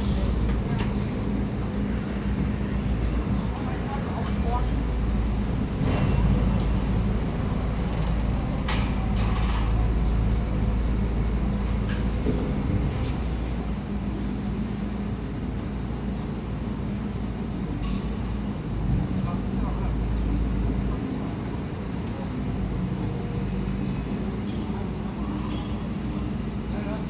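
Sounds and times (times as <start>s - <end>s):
excavator diesel engine rumbling: 0.0s - 27.0s.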